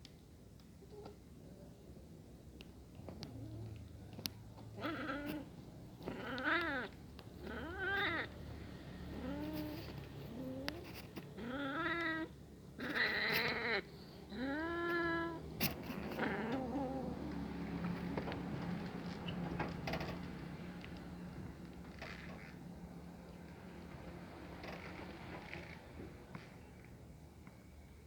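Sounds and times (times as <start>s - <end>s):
kitten meowing: 4.8s - 8.4s, 9.1s - 15.4s.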